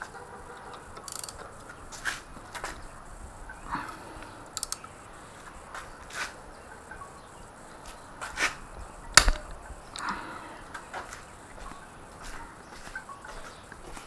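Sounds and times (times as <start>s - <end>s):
tools and engine parts clicking: 0.8s - 1.8s, 4.2s - 5.0s, 9.2s - 10.1s.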